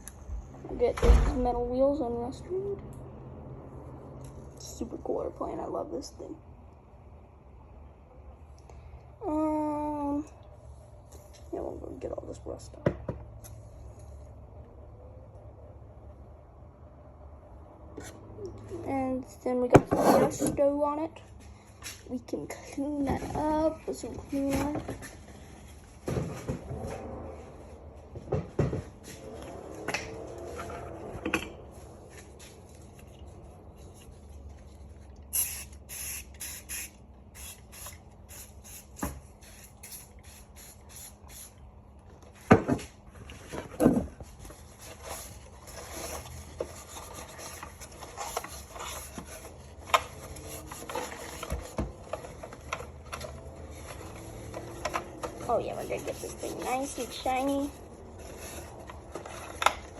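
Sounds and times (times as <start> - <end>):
spray bottle spurts: 35.3 - 41.6
rag rubbing a surface: 55.4 - 58.8.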